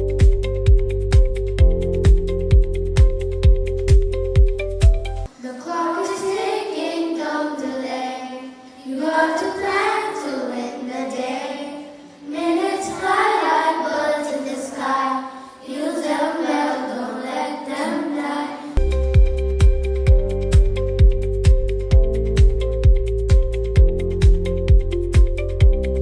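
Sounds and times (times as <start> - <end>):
children singing: 5.3 - 18.8.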